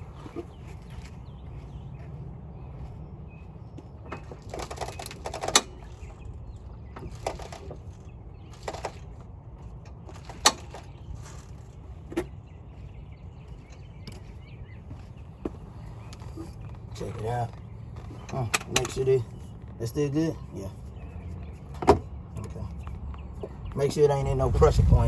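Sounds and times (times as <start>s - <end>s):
steady low rumble: 0.0s - 25.0s
sharp clicks and knocks: 4.0s - 6.3s.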